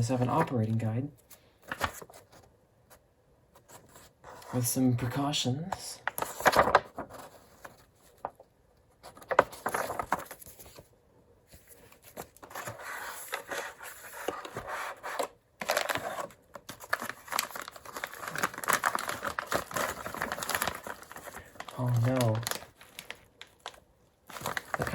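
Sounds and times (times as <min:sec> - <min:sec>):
plastic bags and paper crinkling: 0:05.8 - 0:08.5, 0:09.1 - 0:10.9, 0:15.6 - 0:24.9.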